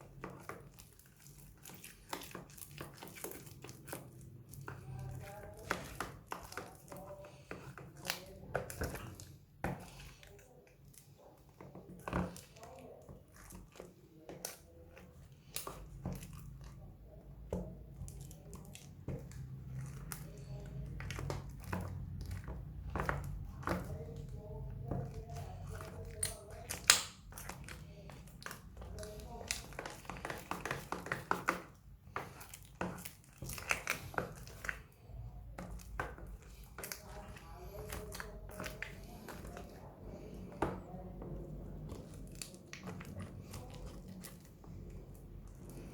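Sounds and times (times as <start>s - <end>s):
slime squishing and crackling: 0.0s - 45.9s.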